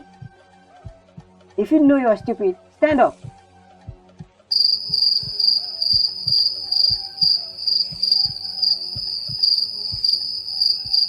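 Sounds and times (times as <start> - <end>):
crickets chirping: 4.5 - 11.0.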